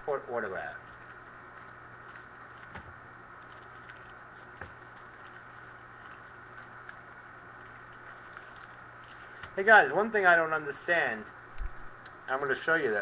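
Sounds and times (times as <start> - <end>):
steady low hum: 0.0 - 13.0
trading cards clicking and rustling: 0.8 - 9.6.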